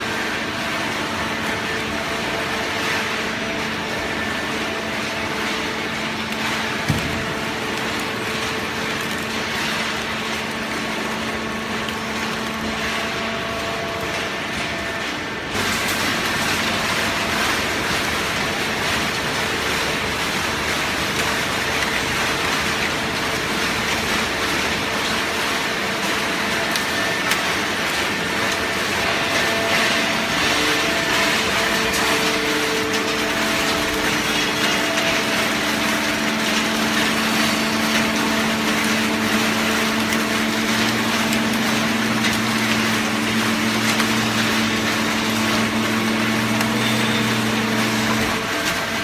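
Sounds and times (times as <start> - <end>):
constant mechanical hum: 0.0 - 49.0
paper baler running: 0.0 - 49.0
baler machine humming: 25.8 - 49.0.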